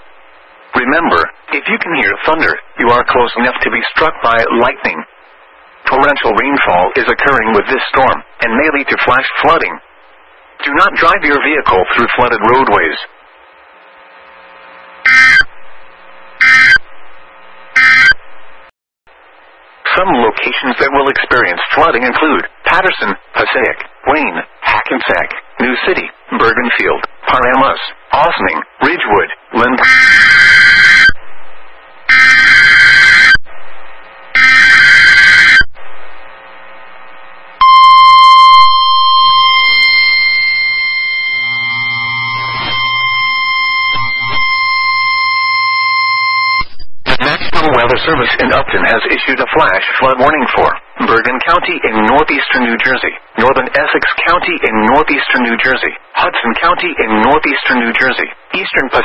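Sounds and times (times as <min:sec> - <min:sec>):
steady hum: 0:00.0 - 0:59.0
piercing steady alert tone: 0:37.6 - 0:46.8
digital data bursts warbling: 0:38.6 - 0:48.6.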